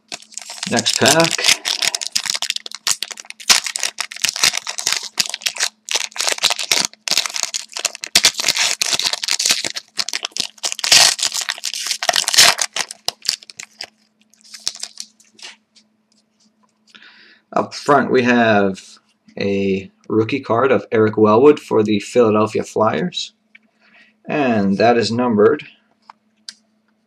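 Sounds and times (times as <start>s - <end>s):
wrapper crinkling: 0.0s - 15.6s
faint steady hum: 0.0s - 27.0s.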